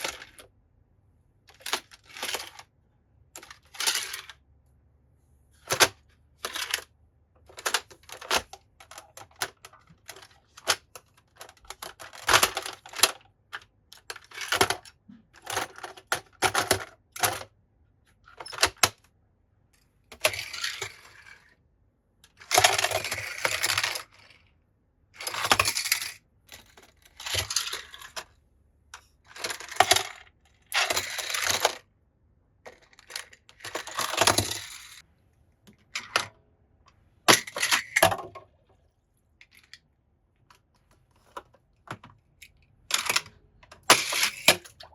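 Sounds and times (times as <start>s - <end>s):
toy cars clinking and rattling: 0.0s - 0.5s, 1.5s - 2.7s, 3.4s - 4.4s, 5.6s - 17.5s, 20.1s - 21.6s, 22.3s - 24.5s, 25.2s - 28.4s, 29.2s - 31.9s, 32.7s - 35.0s, 37.3s - 38.3s, 39.4s - 39.9s, 42.4s - 44.9s.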